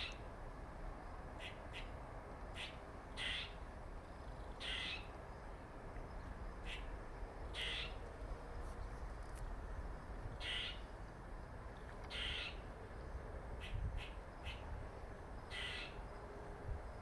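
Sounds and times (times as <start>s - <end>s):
squirrel rasping calls: 2.6s - 3.5s, 4.6s - 5.0s, 7.6s - 8.0s, 10.4s - 10.8s, 12.1s - 12.6s, 15.5s - 16.0s.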